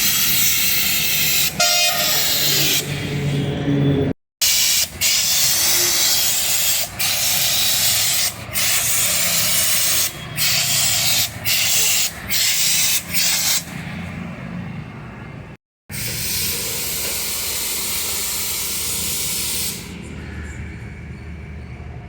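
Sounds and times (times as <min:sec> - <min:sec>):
high-pressure water jet hissing: 0:00.0 - 0:03.0, 0:04.4 - 0:13.8, 0:15.9 - 0:20.0.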